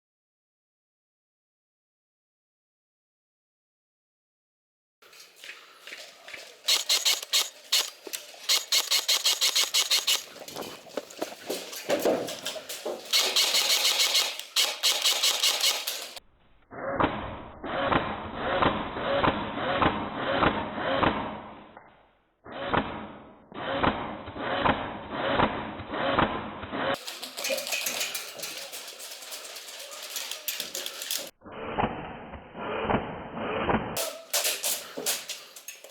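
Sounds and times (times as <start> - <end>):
airsoft gunfire bursts: 6.7 - 10.4, 13.1 - 16.2.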